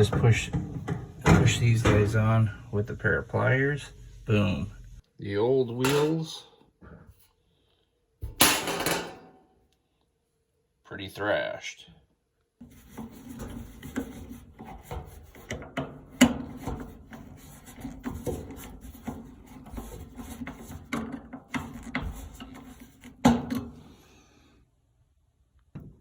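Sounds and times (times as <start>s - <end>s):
steady low hum: 1.2s - 5.0s.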